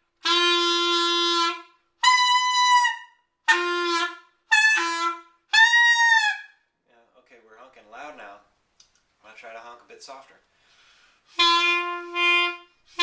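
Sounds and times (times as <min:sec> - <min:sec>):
clarinet honking: 0:00.2 - 0:06.6, 0:11.3 - 0:13.0.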